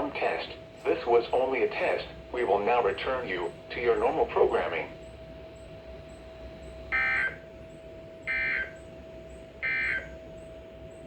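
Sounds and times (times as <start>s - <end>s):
receiver hiss: 0.0s - 4.9s.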